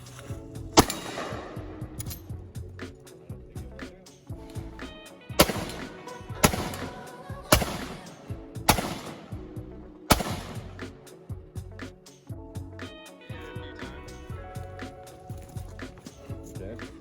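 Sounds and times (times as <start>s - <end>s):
background music: 0.0s - 17.0s
rifle shots: 0.8s - 2.2s, 5.4s - 9.4s, 10.1s - 10.9s.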